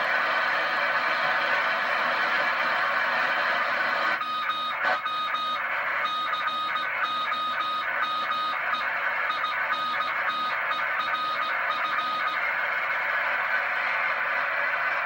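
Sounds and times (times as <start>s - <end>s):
morse code tone: 4.2s - 12.6s
radio static: 4.7s - 15.0s.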